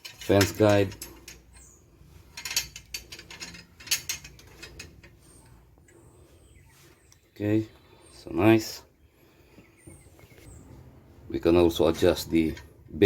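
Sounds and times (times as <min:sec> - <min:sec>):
metal fence sliding and clicking: 0:00.0 - 0:01.6, 0:02.2 - 0:06.0
light handling noise: 0:00.0 - 0:06.2.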